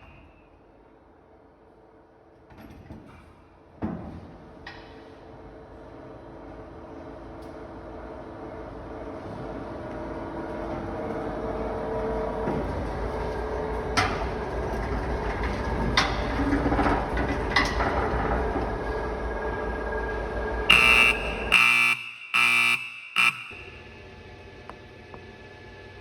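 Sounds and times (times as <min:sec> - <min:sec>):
loud buzzer beeps: 0:20.7 - 0:23.9.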